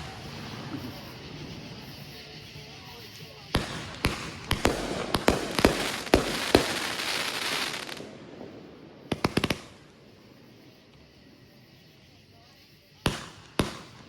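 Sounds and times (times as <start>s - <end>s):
fireworks pops: 0.0s - 2.2s, 3.5s - 10.0s, 13.0s - 14.0s
fireworks bangs: 0.0s - 14.0s
fireworks crackling hiss: 0.0s - 14.0s.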